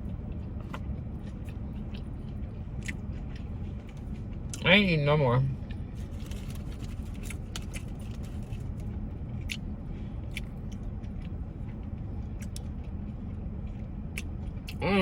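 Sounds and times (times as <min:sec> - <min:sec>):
car interior rumble: 0:00.0 - 0:15.0.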